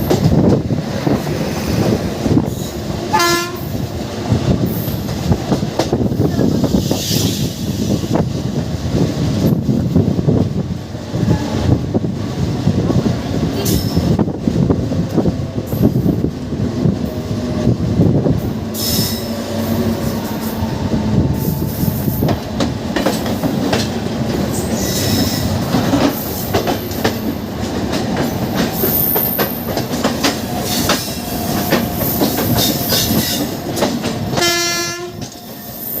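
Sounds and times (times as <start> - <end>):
clickety-clack over rail joints: 0.0 - 18.6, 19.2 - 36.0
train wheels rumbling: 0.0 - 36.0
locomotive horn: 3.1 - 3.7, 34.4 - 35.3.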